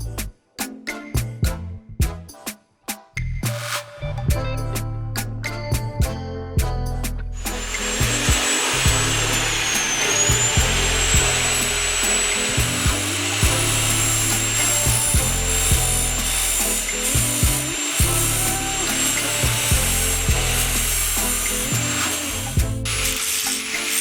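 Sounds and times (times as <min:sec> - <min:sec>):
background music with beat: 0:00.0 - 0:24.0
metal cut-off saw whining: 0:07.4 - 0:24.0.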